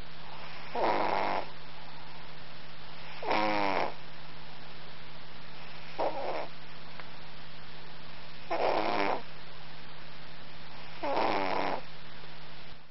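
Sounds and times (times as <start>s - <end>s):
steady low hum: 0.0s - 12.9s
cat snoring: 0.3s - 1.5s, 3.0s - 4.0s, 5.9s - 6.5s, 8.4s - 9.3s, 10.8s - 11.9s.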